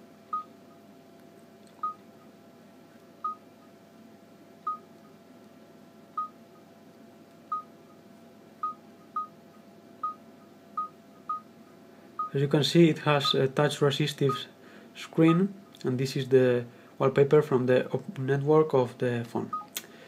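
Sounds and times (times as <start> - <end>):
phone touchscreen beeps: 1.8 - 2.0, 8.6 - 9.3.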